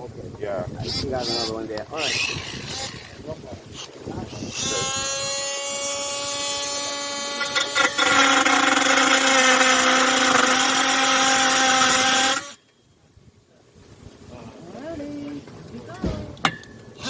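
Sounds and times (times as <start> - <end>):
oscillating multi-tool whining: 0.8 - 12.6.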